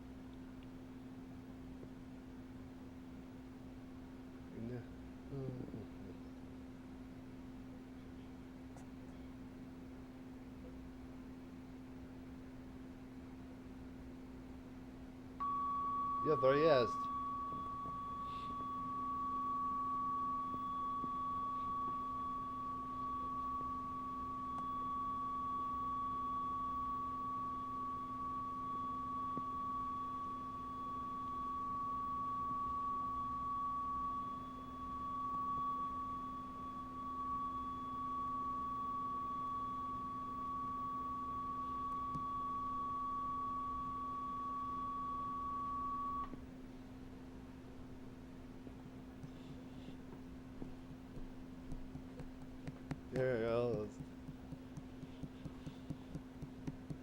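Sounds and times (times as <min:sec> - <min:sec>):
low steady hum: 0:00.0 - 0:57.0
high-pitched tone: 0:15.4 - 0:46.3.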